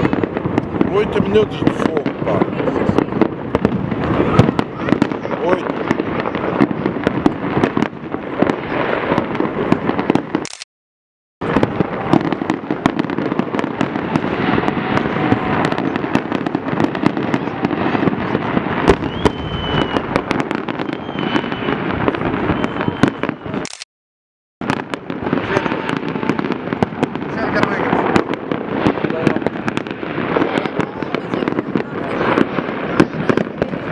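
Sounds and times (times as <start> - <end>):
fireworks bangs and crackling: 0.0 - 10.6, 11.4 - 23.8, 24.6 - 33.9
short high whistles: 19.0 - 20.1, 20.9 - 21.8, 22.5 - 23.4.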